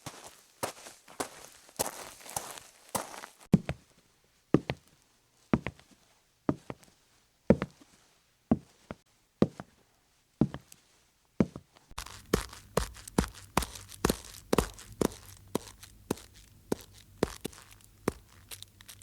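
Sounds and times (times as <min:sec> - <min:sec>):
footsteps on hard surface: 0:11.4 - 0:19.0.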